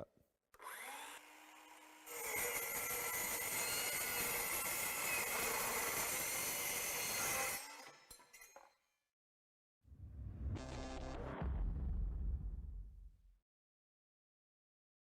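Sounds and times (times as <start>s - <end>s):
circular saw cutting metal: 0.7s - 8.6s.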